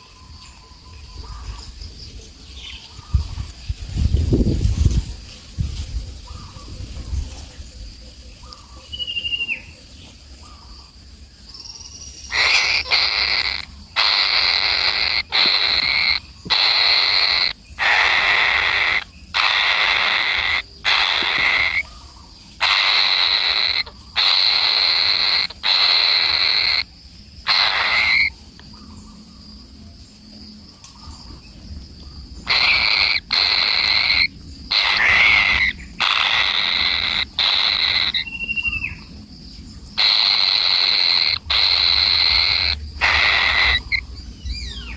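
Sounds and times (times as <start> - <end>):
harsh animal calls: 12.3 - 29.0, 32.4 - 39.2, 39.9 - 44.9.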